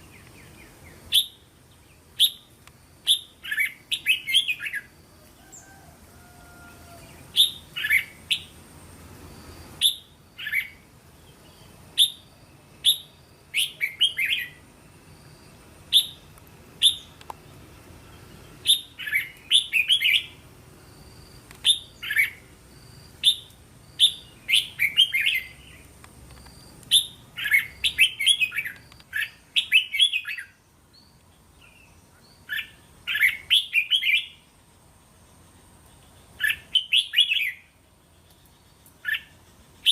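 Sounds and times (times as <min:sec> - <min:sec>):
bird singing chirpy phrases: 0:00.0 - 0:05.0, 0:09.8 - 0:15.1, 0:15.9 - 0:20.4, 0:21.6 - 0:22.5, 0:23.2 - 0:25.9, 0:26.9 - 0:34.5, 0:35.3 - 0:39.9.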